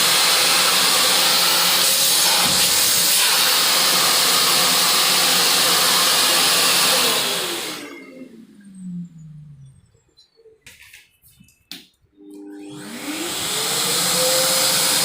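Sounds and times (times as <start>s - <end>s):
vacuum cleaner running: 0.0s - 9.5s, 12.2s - 15.0s
motor winding down whine: 3.5s - 10.3s, 12.2s - 15.0s.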